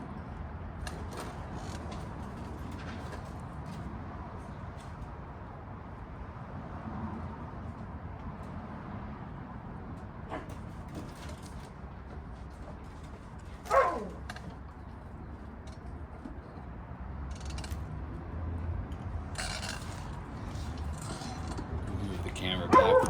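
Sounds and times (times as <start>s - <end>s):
handling clicks and knocks: 18.9s - 23.0s.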